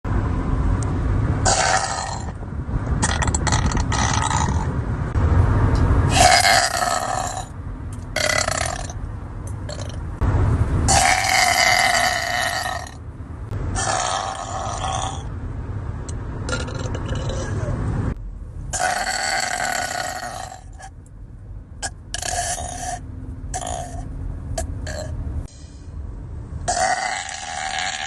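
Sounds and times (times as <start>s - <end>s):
woman burping loudly: 26.7s - 28.0s.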